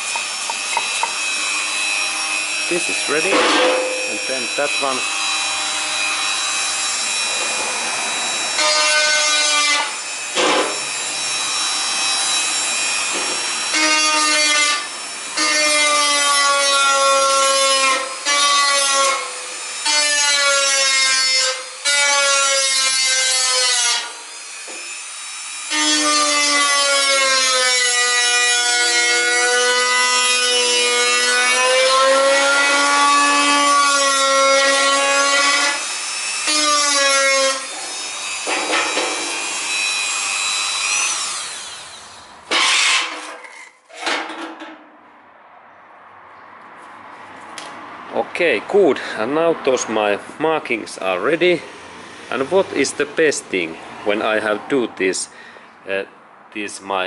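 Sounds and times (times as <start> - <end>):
rotary tool grinding whine: 0.0 - 43.8.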